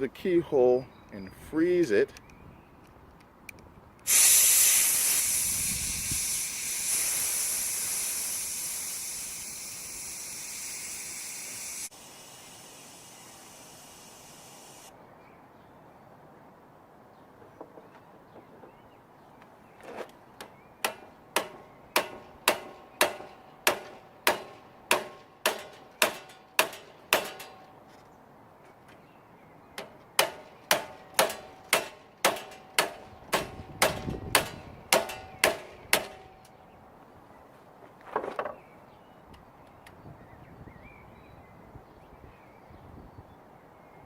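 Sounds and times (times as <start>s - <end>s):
hammer striking metal lock: 20.8s - 27.7s, 29.8s - 36.4s
metal clatter: 20.9s - 27.7s, 29.8s - 36.3s.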